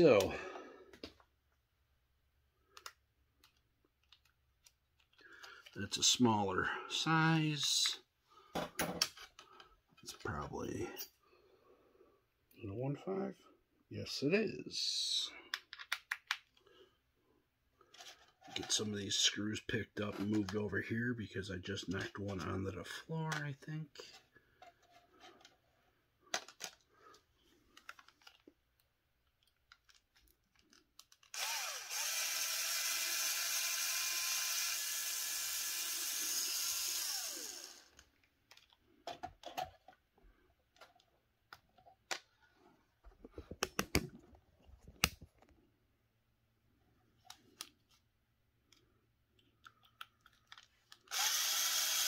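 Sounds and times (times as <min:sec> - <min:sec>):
small parts clicking and tapping: 0:02.7 - 0:05.8, 0:15.5 - 0:16.6, 0:26.3 - 0:32.3, 0:37.8 - 0:40.0, 0:48.7 - 0:52.0
cordless power driver spinning: 0:31.2 - 0:38.1, 0:51.0 - 0:52.0.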